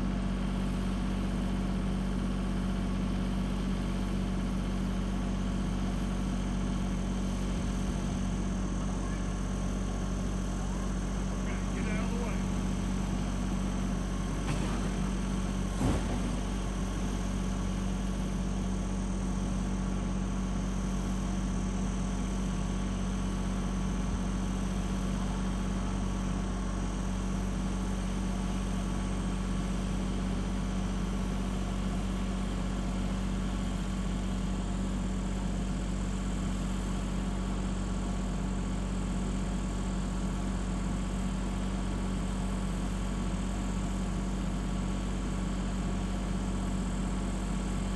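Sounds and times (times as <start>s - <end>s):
tractor engine running: 0.0s - 32.7s.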